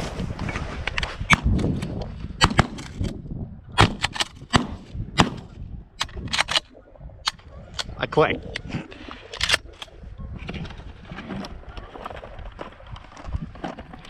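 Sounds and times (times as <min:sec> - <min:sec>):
wind noise: 0:00.0 - 0:14.0
sharp cracks and clicks: 0:01.3 - 0:03.2, 0:03.8 - 0:08.0.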